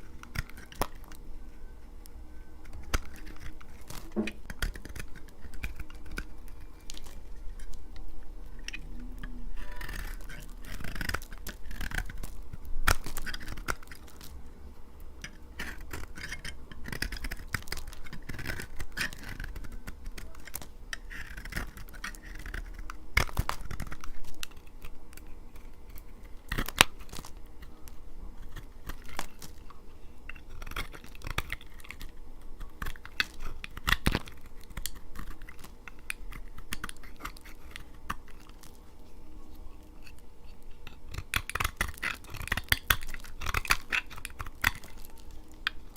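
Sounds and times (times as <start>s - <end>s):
knife cutting dry soap: 15.2s - 24.9s, 39.9s - 45.9s.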